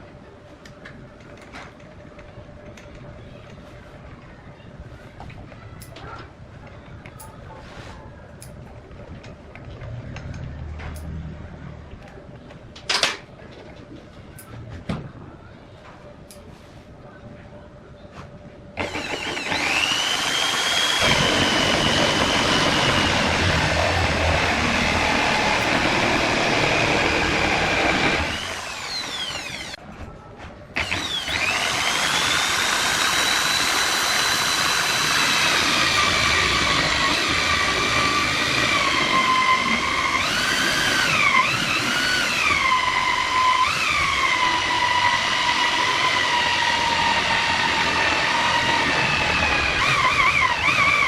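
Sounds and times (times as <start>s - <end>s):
power tool motor whining: 18.8s - 29.8s, 30.8s - 51.0s.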